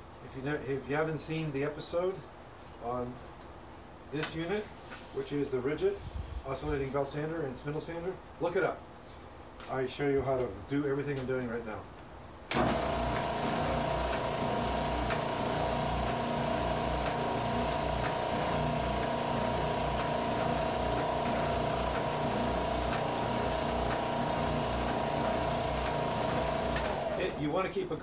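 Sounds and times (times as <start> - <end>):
sander whining: 12.6 - 27.6.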